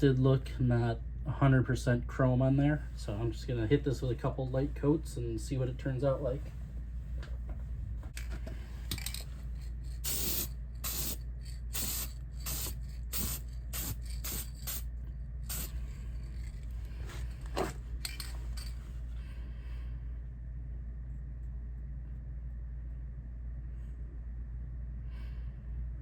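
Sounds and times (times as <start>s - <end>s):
spray paint can hissing: 9.9s - 16.6s.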